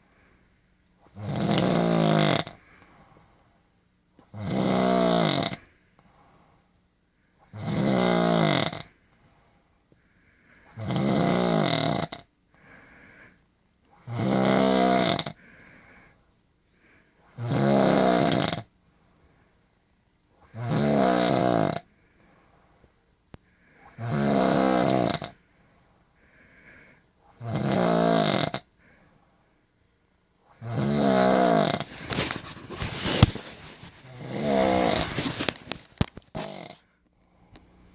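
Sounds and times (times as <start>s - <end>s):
woman snoring: 1.1s - 2.6s, 4.3s - 5.6s, 7.5s - 8.9s, 10.7s - 12.3s, 14.0s - 15.4s, 17.3s - 18.7s, 20.4s - 21.9s, 23.8s - 25.4s, 27.3s - 28.7s, 30.5s - 33.2s, 34.0s - 35.5s, 36.3s - 36.8s
faint breaths: 2.5s - 3.8s, 5.6s - 7.6s, 8.8s - 10.8s, 12.5s - 14.0s, 15.3s - 17.4s, 18.8s - 19.8s, 21.8s - 24.0s, 25.2s - 27.4s, 28.7s - 30.7s, 31.6s - 37.9s.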